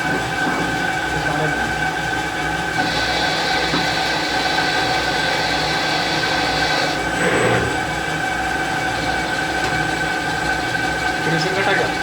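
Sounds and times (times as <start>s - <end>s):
lathe machine hum: 0.0s - 12.0s
machine hiss: 2.8s - 7.6s, 8.8s - 12.0s.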